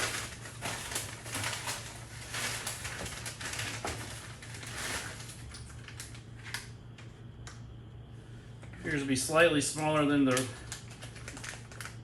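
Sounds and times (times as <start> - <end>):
low steady hum: 0.0 - 12.0
small parts rustling and clicking: 10.0 - 12.0.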